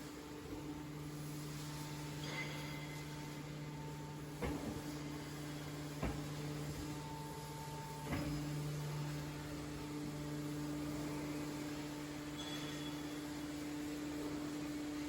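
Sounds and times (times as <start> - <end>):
baling press humming: 3.8 - 11.1.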